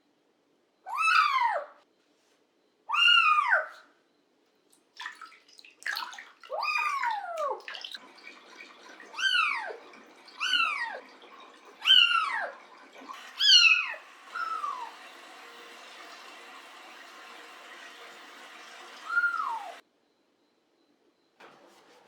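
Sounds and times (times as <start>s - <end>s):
bath water splashing: 4.7s - 19.8s.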